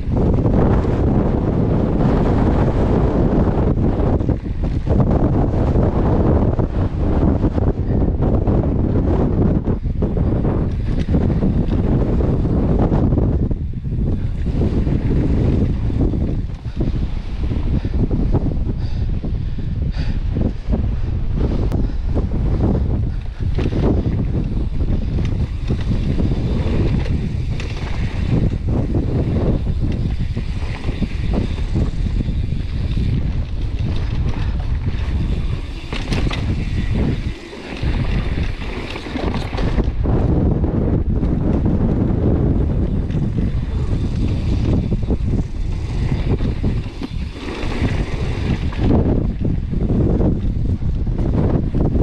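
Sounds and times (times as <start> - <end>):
wind buffeting microphone: 0.0 - 52.0
bike knocks and rattles: 22.7 - 52.0.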